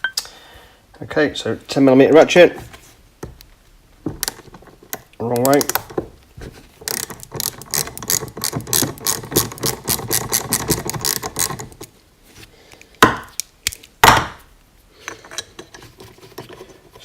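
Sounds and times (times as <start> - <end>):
socket ratchet clicking rapidly: 6.9 - 11.8.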